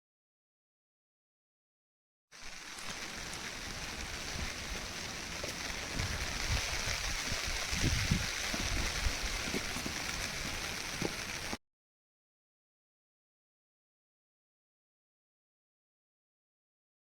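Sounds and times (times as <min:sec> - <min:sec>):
rushing water: 0:02.4 - 0:11.6
wind rumble on microphone: 0:03.6 - 0:11.6.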